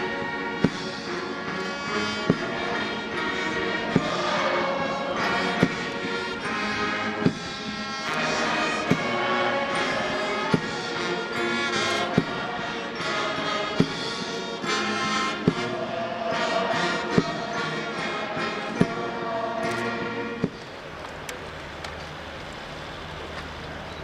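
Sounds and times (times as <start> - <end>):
brass band playing: 0.0 - 20.6
sharp drum strokes: 0.6 - 1.2, 5.3 - 11.1, 11.8 - 17.6.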